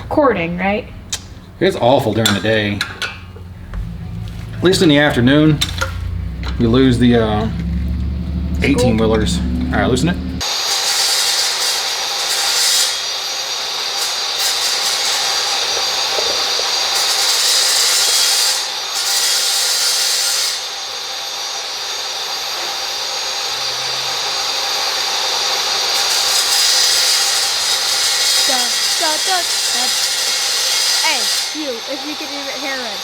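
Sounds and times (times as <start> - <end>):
power tool rasping hiss: 4.7 - 33.0.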